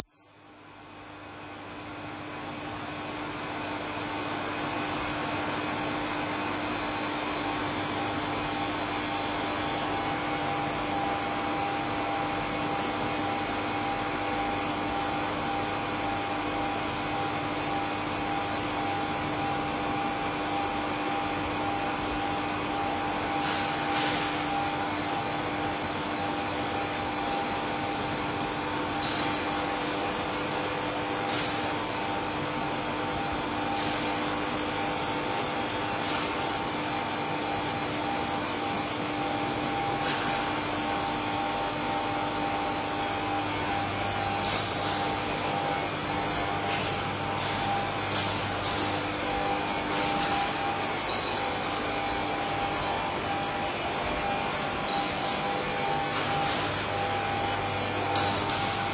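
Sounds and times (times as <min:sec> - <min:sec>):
electrical hum and buzz: 0:00.0 - 0:58.9
crackling electric zaps: 0:31.3 - 0:31.8.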